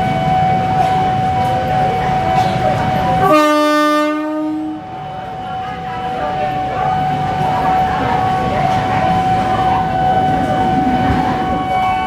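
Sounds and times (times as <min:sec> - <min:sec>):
train rumble: 0:00.0 - 0:12.0
buzzy electric train horn: 0:03.2 - 0:04.9.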